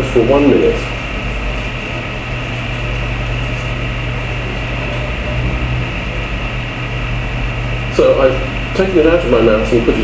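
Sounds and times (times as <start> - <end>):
room noise hiss: 0.0 - 10.0
steady low hum: 0.0 - 10.0.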